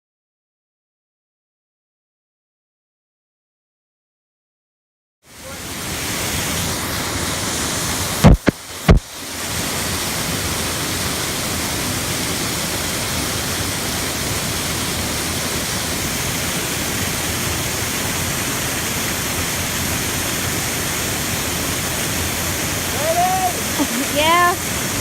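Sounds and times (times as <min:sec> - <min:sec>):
waterfall rushing: 0:05.3 - 0:25.0.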